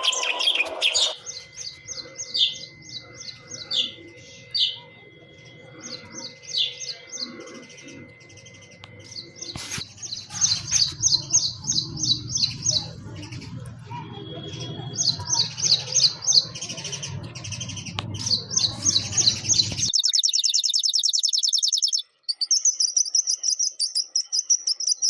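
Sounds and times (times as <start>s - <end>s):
low hum: 0.0s - 19.9s
sparrows chirping: 0.0s - 25.0s.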